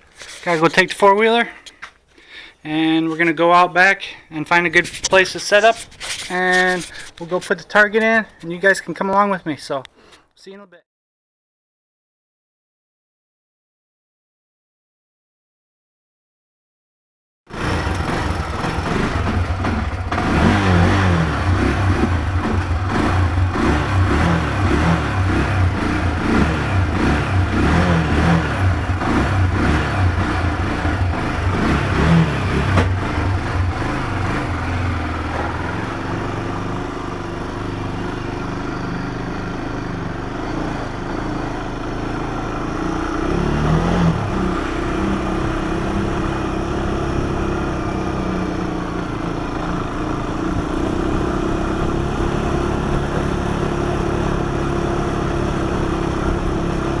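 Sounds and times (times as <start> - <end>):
atv engine revving: 17.5 - 57.0.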